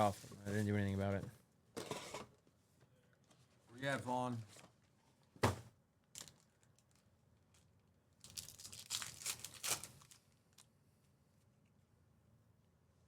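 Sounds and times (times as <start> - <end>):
wrapper tearing and crinkling: 8.2 - 10.7.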